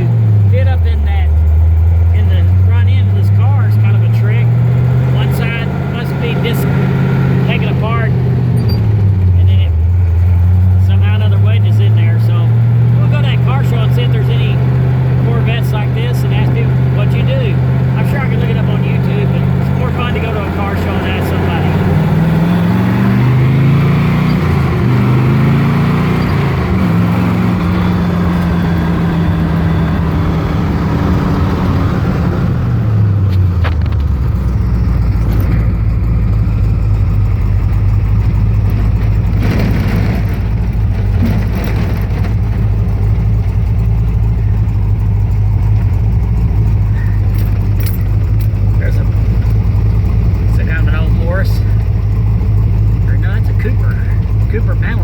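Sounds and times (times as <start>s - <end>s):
car engine revving through gears: 0.0s - 55.0s.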